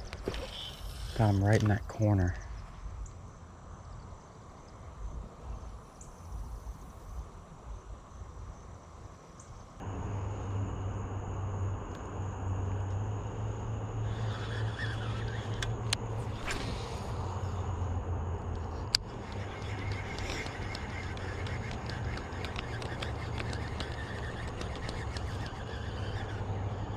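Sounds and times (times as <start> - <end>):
steady low hum: 0.0 - 26.9
sharp clicks: 18.5 - 26.4.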